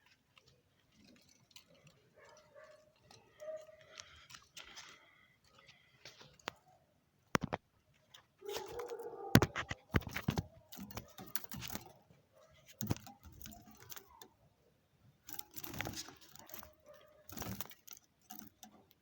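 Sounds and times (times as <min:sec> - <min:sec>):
metallic rattling and clicks: 0:00.0 - 0:06.8, 0:07.4 - 0:14.5, 0:15.1 - 0:19.0
rustling: 0:15.2 - 0:19.0.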